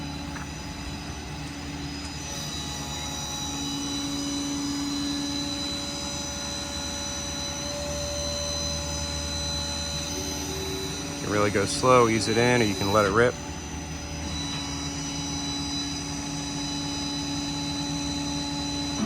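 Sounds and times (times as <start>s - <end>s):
hydraulic whine: 0.0s - 19.0s
mid-pitched drone: 0.0s - 19.0s
diesel engine hum: 7.5s - 15.1s.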